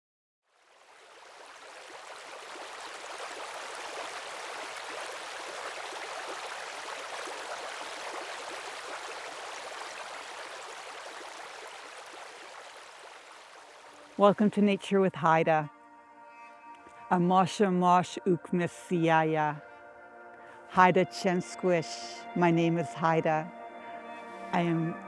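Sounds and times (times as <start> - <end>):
running water rushing: 0.6 - 14.3.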